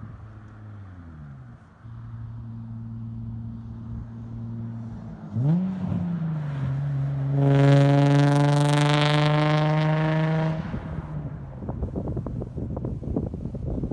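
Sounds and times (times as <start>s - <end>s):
wind rustle on microphone: 10.6s - 13.9s.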